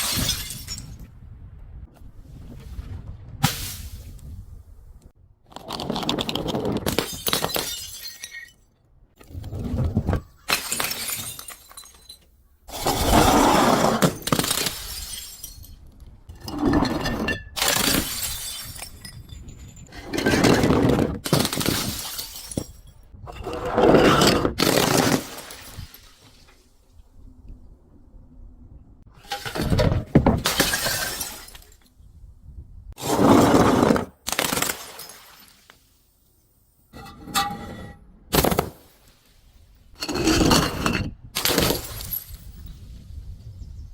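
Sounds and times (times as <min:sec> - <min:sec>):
glass shattering and crunching: 0:00.0 - 0:01.1, 0:06.8 - 0:08.8, 0:10.3 - 0:12.3, 0:14.0 - 0:23.1, 0:29.2 - 0:31.9, 0:34.2 - 0:35.8, 0:40.0 - 0:42.8.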